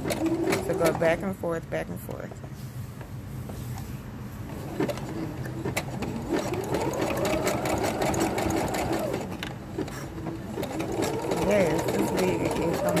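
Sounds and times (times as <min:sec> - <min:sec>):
sewing machine needle clatter: 0:04.8 - 0:13.0.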